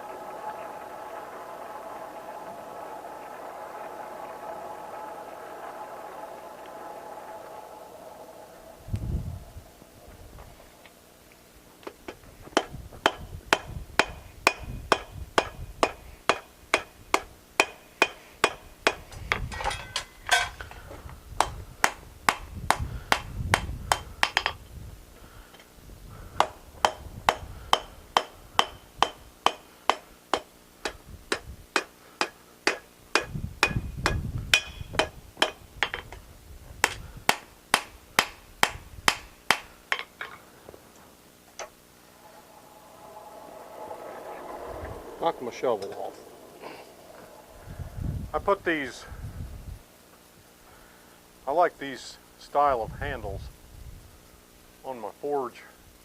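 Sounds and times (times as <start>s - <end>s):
hammer striking steel on anvil: 12.6s - 20.7s, 21.4s - 24.6s, 26.4s - 36.1s, 36.8s - 40.1s.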